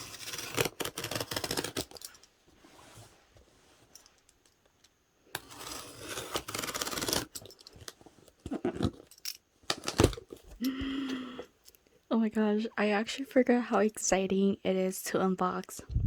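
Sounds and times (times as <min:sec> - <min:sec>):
packing tape cut and torn: 0:00.0 - 0:02.0, 0:05.4 - 0:09.0.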